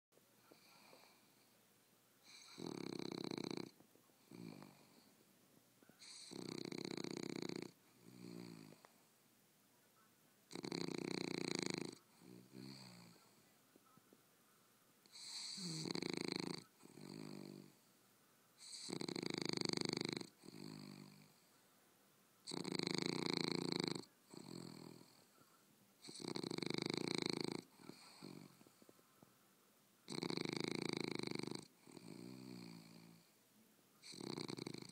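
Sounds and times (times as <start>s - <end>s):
dog snoring: 0.5s - 1.6s, 2.2s - 5.1s, 6.0s - 9.0s, 10.5s - 13.4s, 15.0s - 17.9s, 18.6s - 21.5s, 22.4s - 25.3s, 26.0s - 28.9s, 30.1s - 33.3s, 34.0s - 34.9s.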